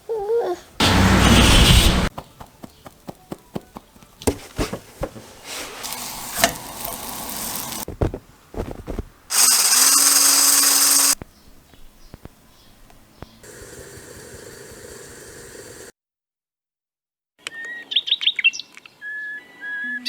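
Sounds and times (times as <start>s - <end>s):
small kitchen appliance motor: 5.8s - 7.8s, 9.3s - 11.2s, 13.4s - 15.9s.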